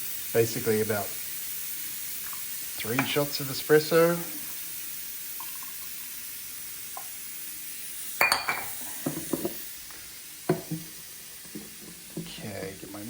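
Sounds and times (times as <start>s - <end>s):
faint hiss: 0.0s - 13.0s
cups clinking: 2.2s - 3.3s, 5.4s - 6.1s, 7.0s - 7.2s, 8.2s - 9.7s, 10.5s - 13.0s.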